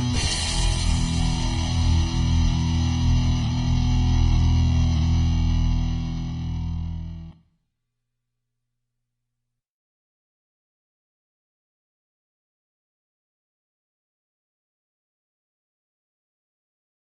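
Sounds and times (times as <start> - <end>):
distorted electric guitar music: 0.0 - 7.4.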